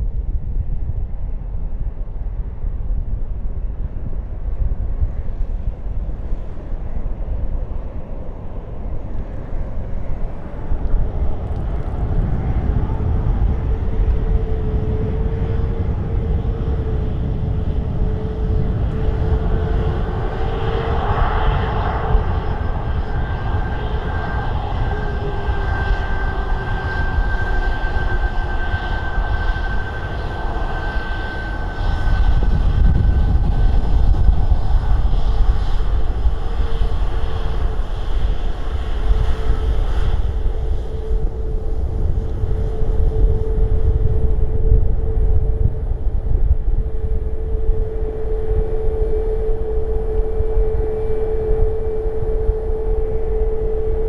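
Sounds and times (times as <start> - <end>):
wind rumble on microphone: 0.0 - 54.0
jet engines whining: 5.1 - 54.0
high whistle: 12.4 - 54.0.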